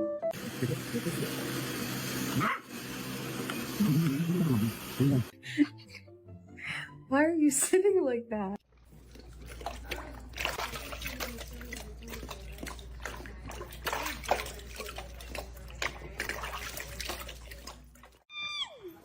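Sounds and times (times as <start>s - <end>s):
water splashing and trickling: 8.7s - 18.3s.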